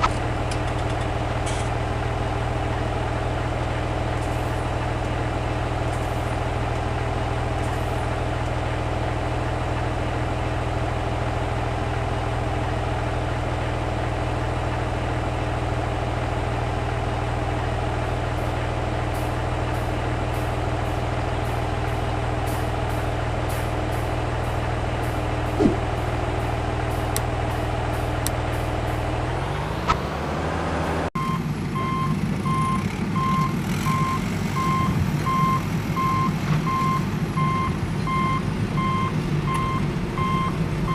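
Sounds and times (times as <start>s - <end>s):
heavy diesel engine running: 0.0s - 40.9s
reversing beeper: 31.2s - 40.9s.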